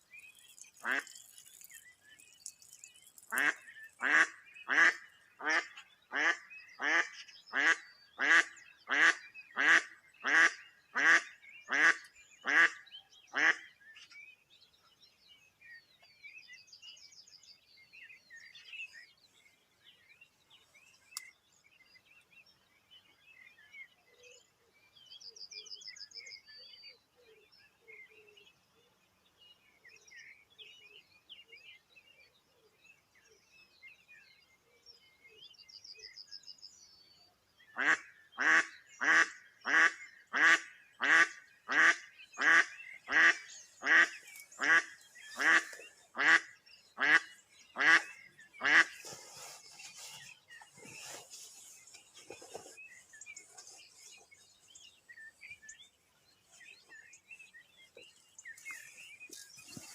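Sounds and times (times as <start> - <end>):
faint songbirds calling: 0.0 - 59.9
duck quacking: 3.4 - 12.8, 37.8 - 49.0.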